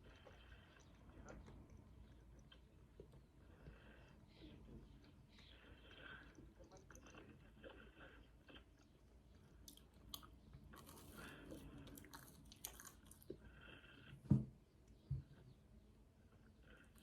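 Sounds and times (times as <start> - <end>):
person chewing crunchy food: 5.4 - 13.6.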